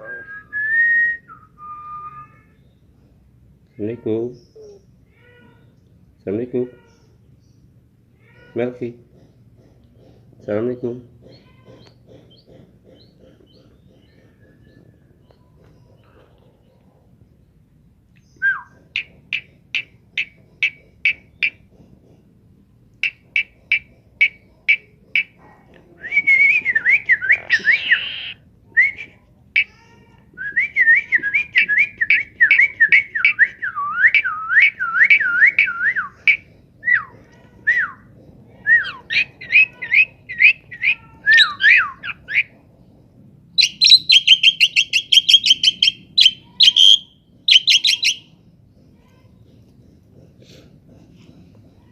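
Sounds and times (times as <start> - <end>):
talking bird whistling: 0.0 - 2.6, 18.2 - 21.6, 26.0 - 29.2, 30.4 - 37.1, 37.7 - 42.5, 43.6 - 48.3.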